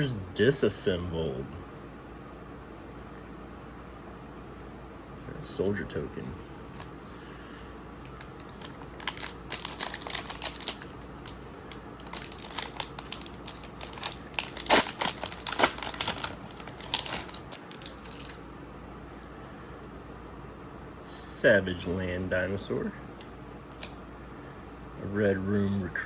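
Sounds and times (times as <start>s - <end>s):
foil wrapper crinkling: 8.0s - 18.4s.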